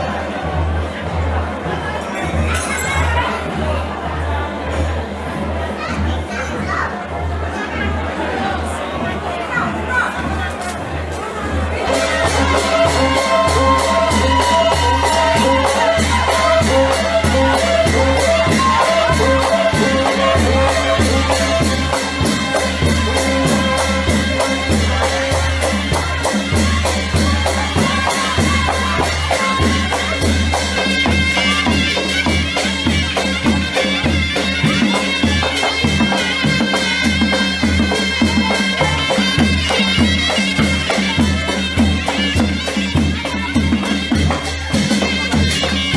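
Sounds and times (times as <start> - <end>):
folk music with reedy melody: 11.8 - 45.9.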